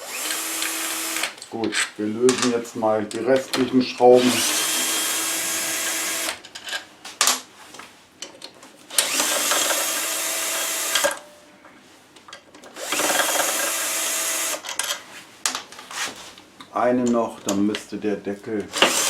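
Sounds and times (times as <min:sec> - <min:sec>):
cordless drill running: 0:00.0 - 0:01.3, 0:04.2 - 0:06.4, 0:08.9 - 0:11.2, 0:12.8 - 0:14.6, 0:18.7 - 0:19.0.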